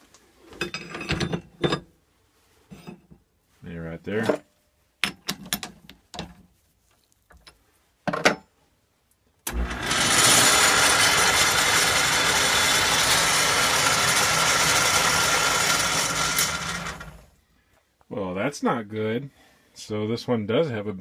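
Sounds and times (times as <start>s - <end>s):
lathe running with faint whine: 9.5s - 17.3s.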